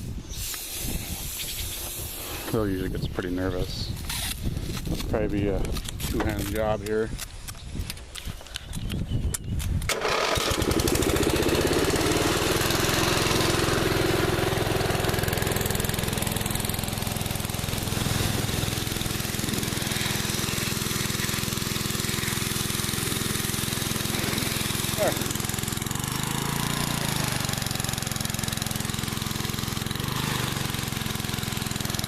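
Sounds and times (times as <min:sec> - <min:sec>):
small gas engine running: 0:09.9 - 0:32.0.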